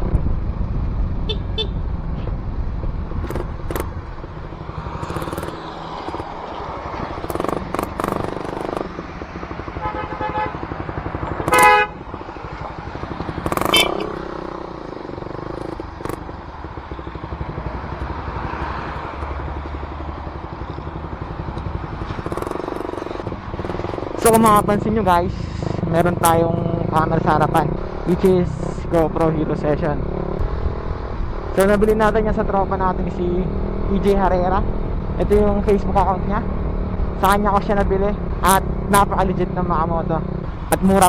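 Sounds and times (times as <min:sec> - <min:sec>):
motorcycle engine running: 0:00.0 - 0:41.0
vehicle horns honking: 0:01.2 - 0:02.4, 0:09.4 - 0:14.6.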